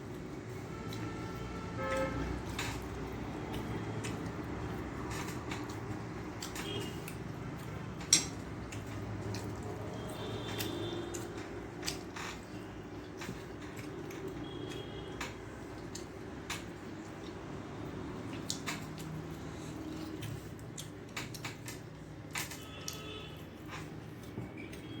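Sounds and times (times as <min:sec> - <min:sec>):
chewing: 0:02.2 - 0:25.0.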